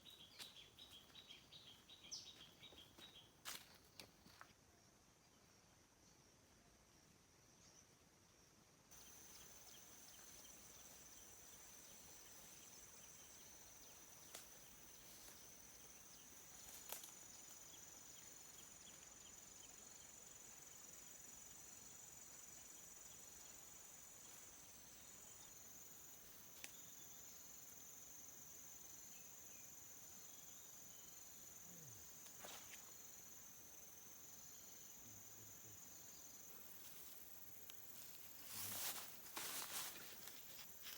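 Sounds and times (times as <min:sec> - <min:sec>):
insects trilling: 0:08.9 - 0:40.9.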